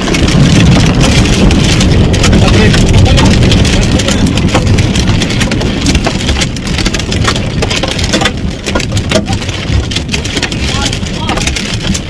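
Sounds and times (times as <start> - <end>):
hail on a car roof: 0.0 - 12.0
low rumble: 0.0 - 12.0.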